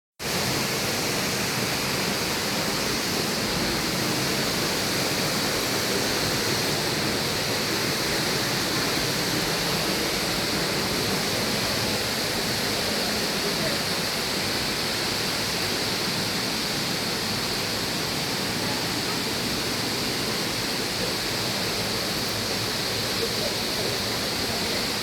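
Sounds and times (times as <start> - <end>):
waterfall rushing: 0.2 - 25.0.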